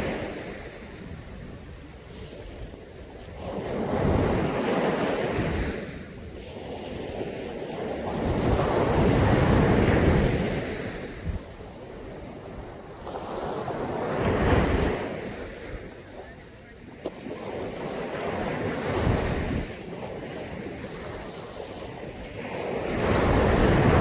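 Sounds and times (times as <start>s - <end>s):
waves breaking on beach: 0.0s - 24.0s.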